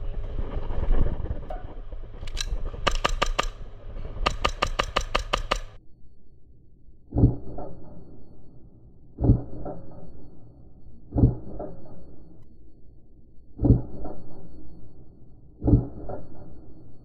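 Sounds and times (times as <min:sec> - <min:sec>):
low rumbling handling noise: 0:00.0 - 0:05.8
airsoft guns firing: 0:02.2 - 0:05.8.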